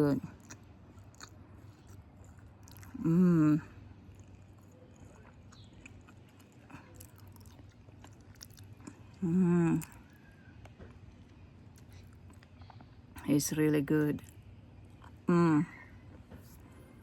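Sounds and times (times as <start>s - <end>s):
faint chewing: 0.0s - 13.3s, 14.1s - 17.0s
person humming mmm: 3.0s - 3.8s.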